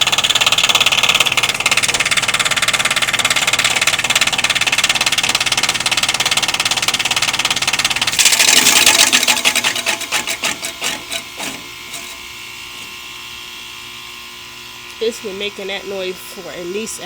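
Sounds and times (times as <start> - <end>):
heat pump pulsing mechanical noise: 0.0 - 17.0
steady hum: 0.0 - 17.0.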